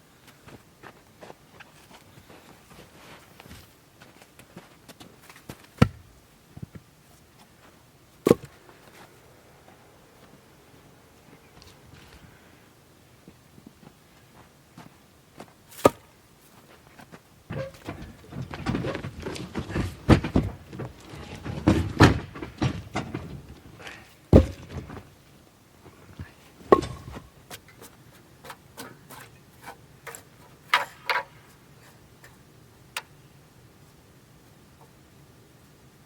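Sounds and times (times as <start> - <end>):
objects knocking and clattering: 17.5 - 23.7, 24.3 - 25.1, 26.7 - 27.3.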